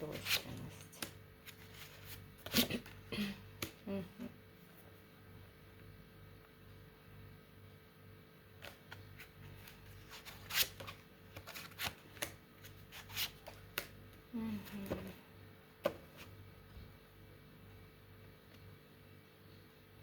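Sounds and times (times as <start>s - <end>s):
cards shuffling and snapping: 8.6s - 14.0s.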